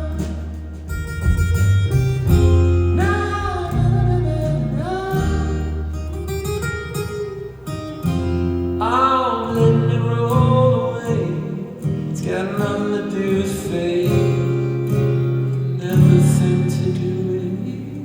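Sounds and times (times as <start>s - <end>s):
male voice singing: 0.0s - 0.7s, 2.9s - 6.0s, 8.8s - 14.8s, 15.7s - 18.0s
plucked strings: 0.0s - 11.4s
bass notes: 0.0s - 12.1s.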